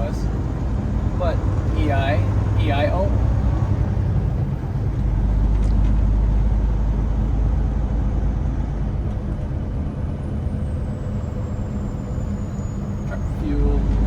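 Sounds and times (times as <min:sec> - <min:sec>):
road noise inside cab: 0:00.0 - 0:14.0
truck diesel engine rumble: 0:00.0 - 0:14.0.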